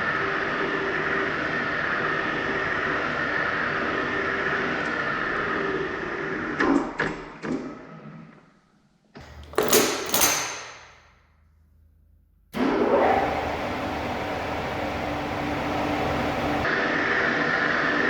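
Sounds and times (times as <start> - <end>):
lathe spindle winding down: 12.6 - 16.7
lathe starting up: 12.6 - 16.7
low hum: 12.6 - 16.7.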